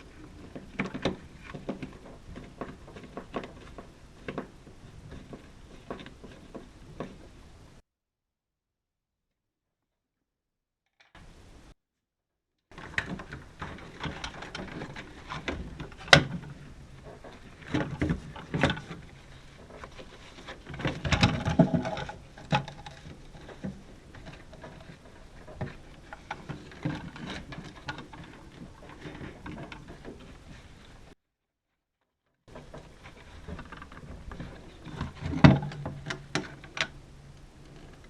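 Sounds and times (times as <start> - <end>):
tools and parts being handled: 32.5 - 38.0.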